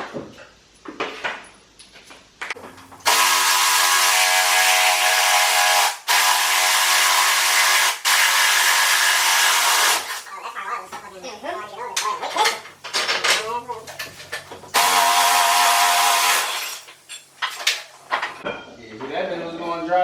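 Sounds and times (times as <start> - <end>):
tools clicking and knocking: 12.0 - 14.8.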